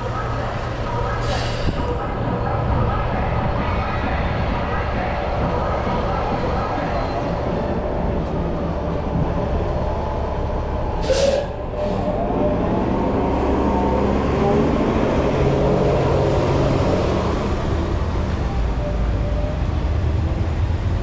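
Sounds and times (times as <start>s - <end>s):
train rumbling: 0.0s - 21.0s
short sharp hisses: 11.0s - 12.0s.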